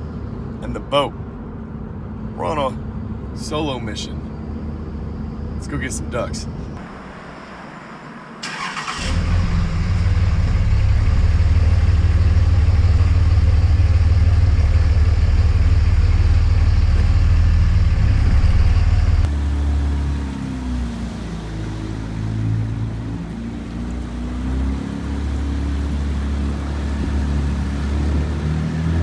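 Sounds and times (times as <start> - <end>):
engine low rumble: 0.0 - 29.0
engine rising and falling pitch: 8.4 - 29.0.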